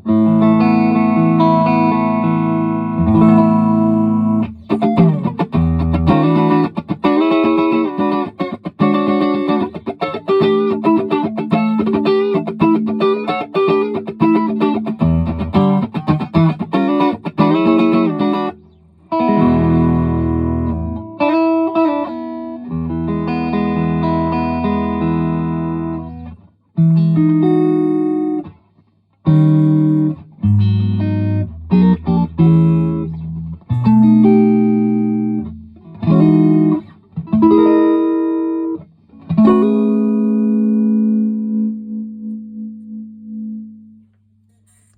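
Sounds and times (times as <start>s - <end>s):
electric guitar playing: 0.0s - 28.6s, 29.2s - 44.0s.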